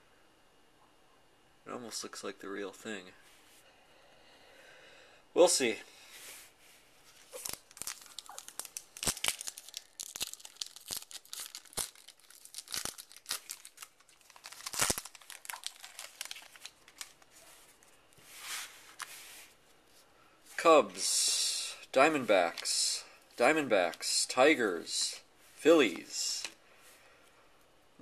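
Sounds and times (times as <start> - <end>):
cards being handled: 7.1 - 19.5, 22.2 - 22.8
foil wrapper tearing and crinkling: 7.2 - 17.3.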